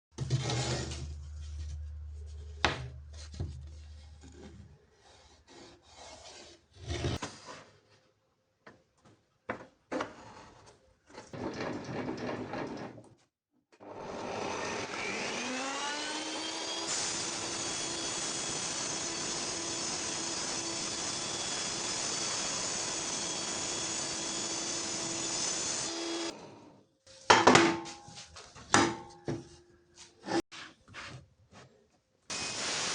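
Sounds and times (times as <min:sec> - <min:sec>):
electric power tool spinning: 0:13.8 - 0:26.4.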